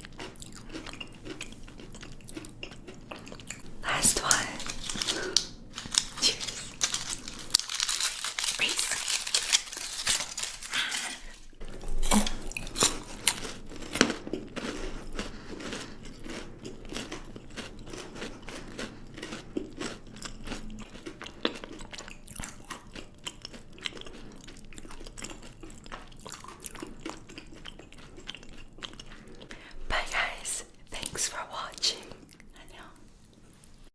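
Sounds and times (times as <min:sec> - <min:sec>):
chewing and crunching chocolate: 0:00.0 - 0:33.9
dense crackly noise: 0:01.7 - 0:14.7.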